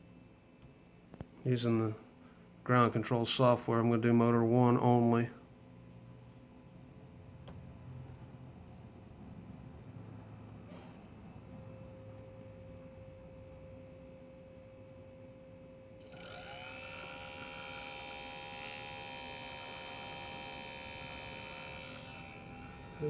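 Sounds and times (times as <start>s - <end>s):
small motor whining: 16.0s - 23.0s.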